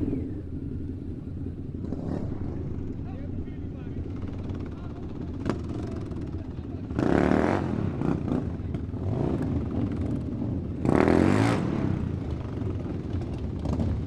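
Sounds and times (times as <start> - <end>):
motorcycle engine revving: 0.0 - 14.0.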